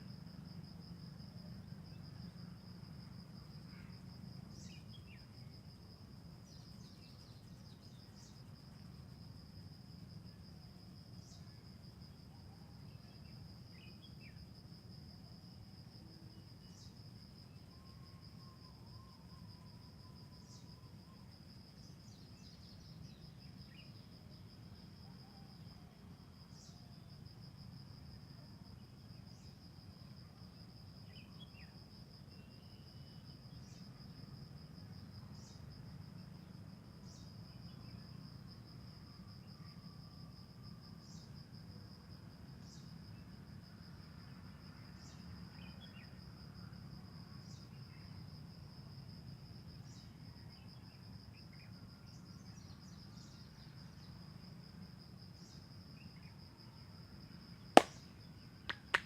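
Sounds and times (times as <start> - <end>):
cricket trilling: 0.0 - 41.9, 49.5 - 59.0
sharp slap or crack: 57.8 - 58.0, 58.7 - 59.0.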